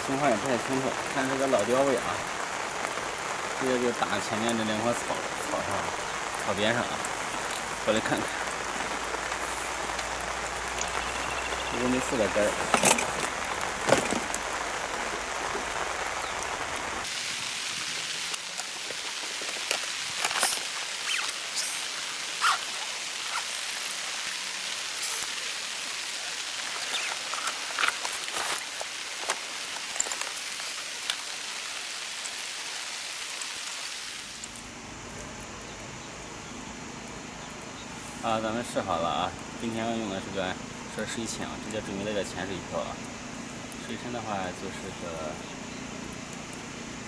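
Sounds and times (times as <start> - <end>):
raindrops tapping: 0.0 - 32.6
rain falling: 0.0 - 47.0.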